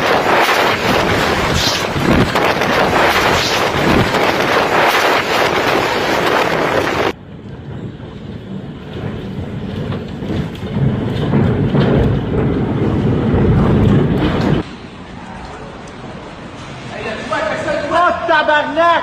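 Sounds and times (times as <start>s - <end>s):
wind buffeting microphone: 0.0s - 14.7s
deep rumble of storm wind: 0.0s - 16.5s.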